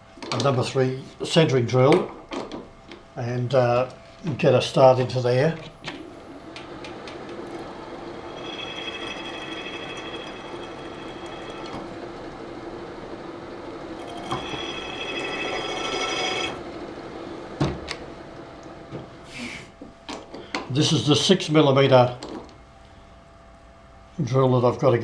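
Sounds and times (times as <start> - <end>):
milling machine spindle running: 5.1 - 19.3
high whine: 5.7 - 18.0.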